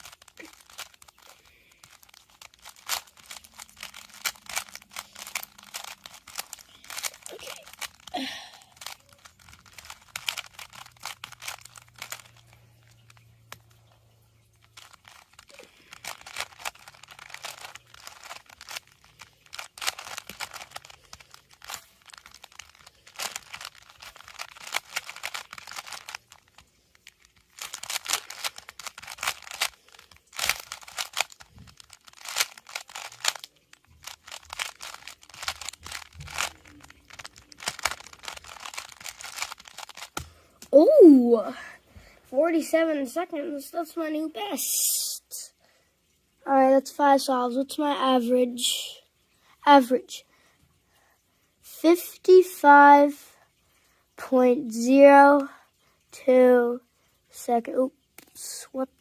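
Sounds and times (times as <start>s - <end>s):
puzzle cube layers clicking: 0.0s - 41.2s.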